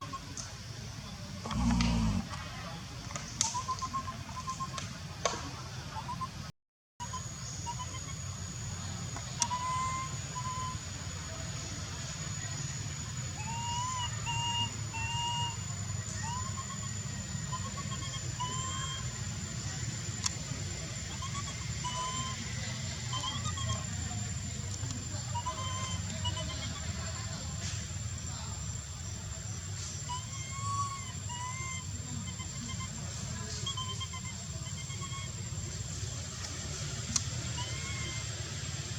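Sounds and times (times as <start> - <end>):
baby monkey crying calls: 1.5 - 2.2, 13.3 - 19.2, 21.0 - 24.1, 25.2 - 27.4, 30.0 - 35.5, 37.4 - 38.4
high-pitched whine: 7.0 - 38.9.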